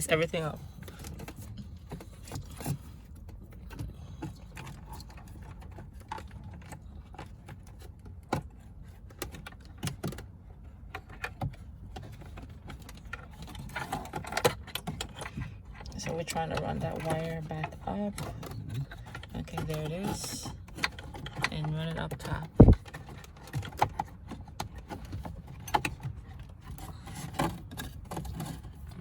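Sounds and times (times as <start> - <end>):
clicks knocks and rustles: 0.8 - 29.0
steady low hum: 21.5 - 22.9.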